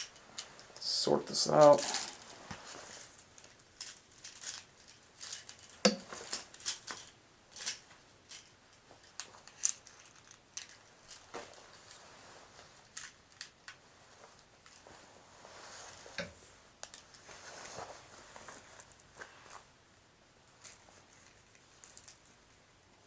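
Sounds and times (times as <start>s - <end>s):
wires clicking and snipping: 3.4s - 12.0s, 12.8s - 13.8s.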